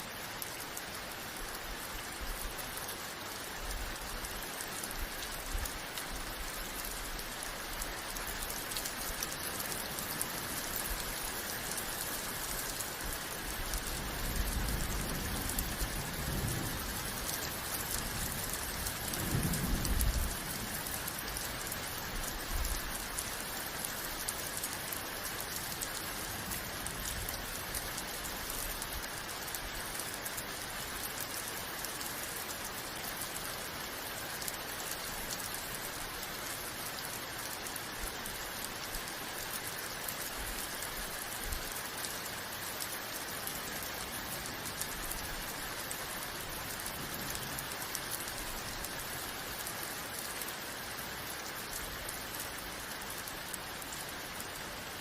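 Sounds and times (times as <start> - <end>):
steady rain falling: 0.0 - 55.0
low rumbles of thunder: 14.0 - 21.0.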